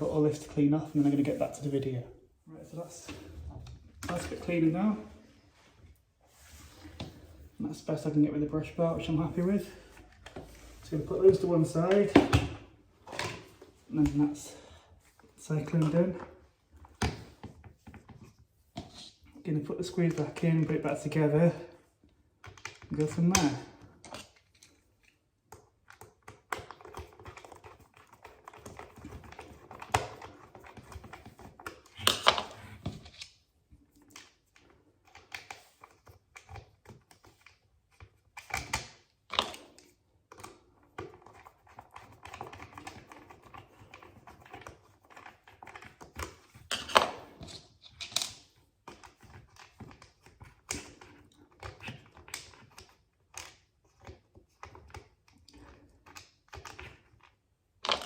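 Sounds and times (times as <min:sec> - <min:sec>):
plastic parts clicking and scraping: 0:22.4 - 0:58.0.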